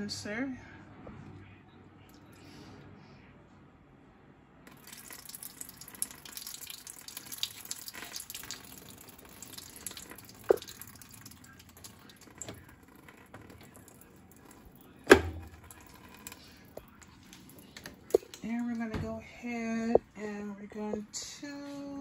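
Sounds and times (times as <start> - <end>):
water running: 4.7 - 21.6
sharp clunk: 15.1 - 15.5.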